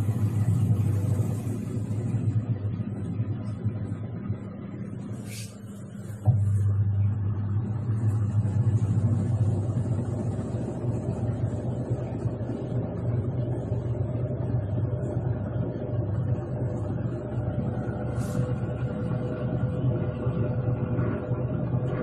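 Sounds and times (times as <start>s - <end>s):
washing machine motor humming: 0.0s - 22.0s
brief high hiss: 5.2s - 5.6s.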